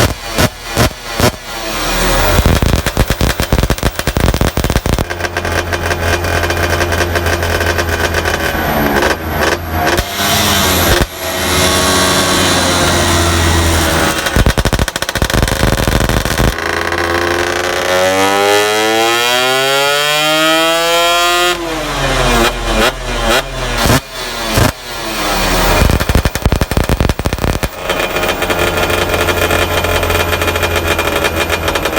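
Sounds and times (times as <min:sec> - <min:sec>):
engine revving: 0:00.0 - 0:31.9
two-stroke engine popping idle: 0:02.3 - 0:10.0, 0:13.2 - 0:17.9, 0:21.9 - 0:31.9.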